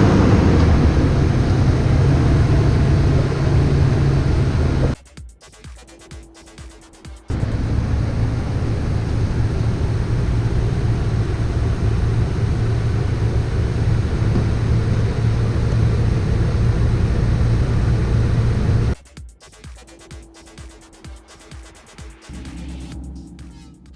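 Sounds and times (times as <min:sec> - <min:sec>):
vehicle engine rumble: 0:00.0 - 0:05.0, 0:07.3 - 0:19.0.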